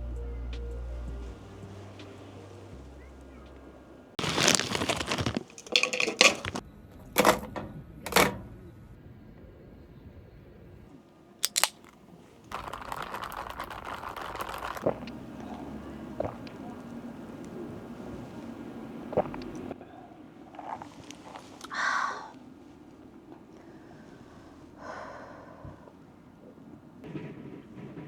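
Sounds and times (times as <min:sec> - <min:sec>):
crinkling and rustling: 0:04.2 - 0:06.6, 0:11.4 - 0:19.8, 0:20.5 - 0:21.8.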